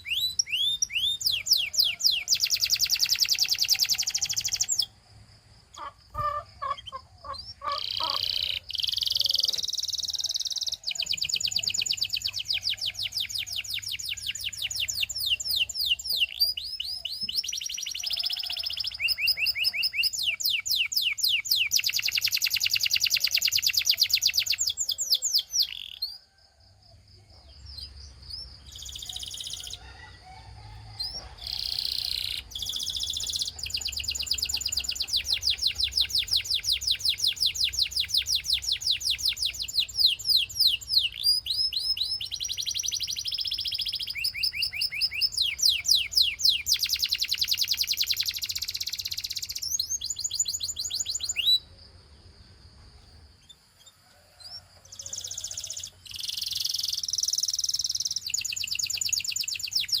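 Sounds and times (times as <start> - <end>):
canary singing trills: 0.0 - 26.4, 27.3 - 51.8, 53.1 - 60.0.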